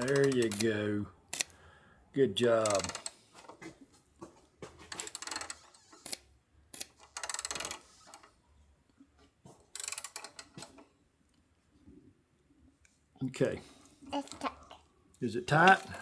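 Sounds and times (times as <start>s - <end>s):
socket ratchet clicking: 0.0s - 1.6s, 2.6s - 3.2s, 4.9s - 8.2s, 9.8s - 10.7s.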